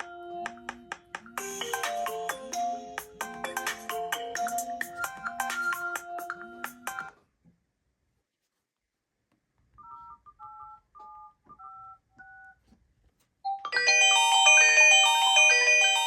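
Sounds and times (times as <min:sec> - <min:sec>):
faint electronic beep melody: 0:01.3 - 0:07.1
loud phone ringtone: 0:01.4 - 0:07.1, 0:13.7 - 0:16.0.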